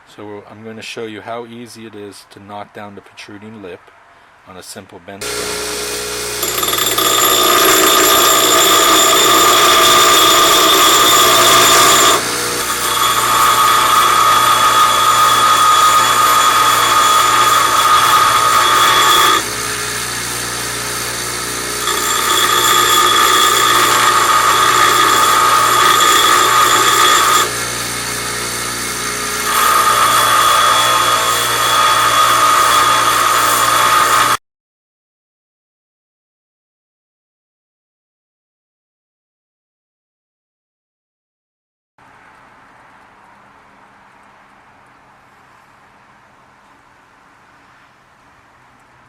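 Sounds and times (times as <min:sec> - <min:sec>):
bench grinder grinding metal: 0:05.2 - 0:34.4
grinder wheel spinning: 0:05.2 - 0:34.4.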